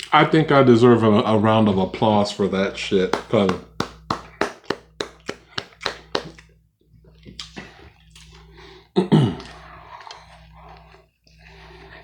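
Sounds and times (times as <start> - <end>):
hands clapping: 3.1 - 6.4.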